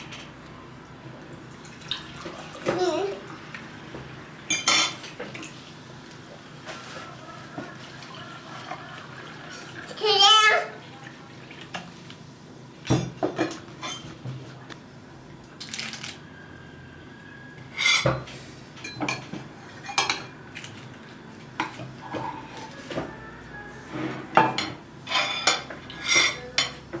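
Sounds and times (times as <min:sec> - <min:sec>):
dishes and cutlery clinking: 0:04.5 - 0:05.6, 0:12.8 - 0:14.4, 0:17.7 - 0:20.8, 0:21.6 - 0:23.1, 0:23.9 - 0:27.0.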